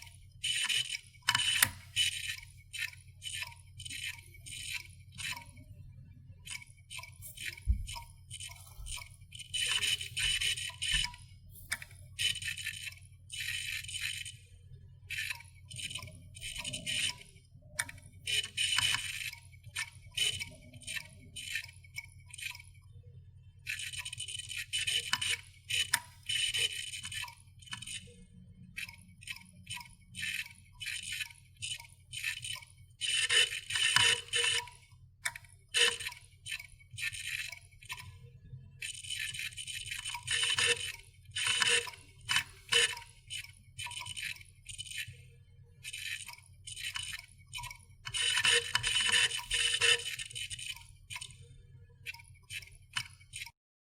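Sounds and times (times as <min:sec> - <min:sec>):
hard disk drive clicking: 0:00.0 - 0:05.6, 0:06.5 - 0:14.4, 0:15.1 - 0:17.2, 0:23.7 - 0:28.2, 0:28.8 - 0:38.2, 0:38.8 - 0:45.2, 0:45.8 - 0:51.5.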